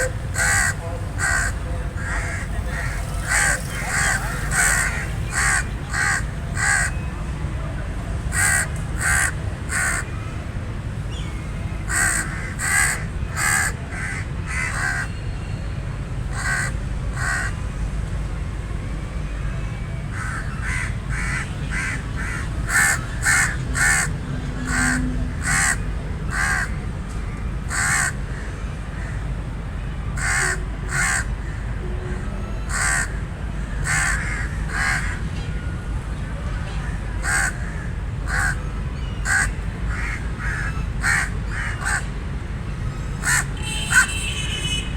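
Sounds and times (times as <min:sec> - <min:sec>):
raven cawing: 0:00.0 - 0:07.0, 0:08.3 - 0:10.2, 0:11.9 - 0:15.1, 0:16.3 - 0:17.6, 0:20.1 - 0:26.8, 0:27.7 - 0:29.2, 0:30.2 - 0:31.6, 0:32.7 - 0:35.2, 0:36.8 - 0:38.6, 0:39.2 - 0:42.1, 0:43.2 - 0:44.3.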